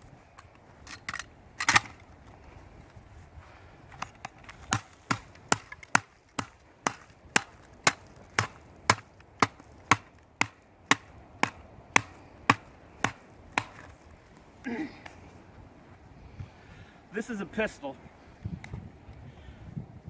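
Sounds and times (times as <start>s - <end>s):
digging tool chopping into ground: 4.0s - 14.0s.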